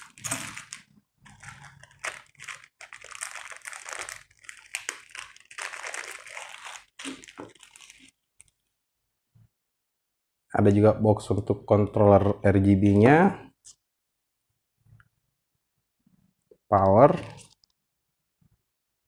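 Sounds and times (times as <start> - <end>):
plastic bags crinkling: 0.0 - 8.2.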